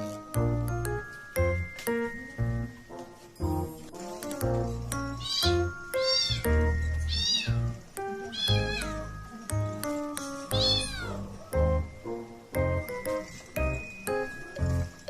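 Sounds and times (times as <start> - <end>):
background piano music: 0.0 - 15.0
cat meowing: 5.2 - 7.7, 8.3 - 9.0, 10.5 - 11.3.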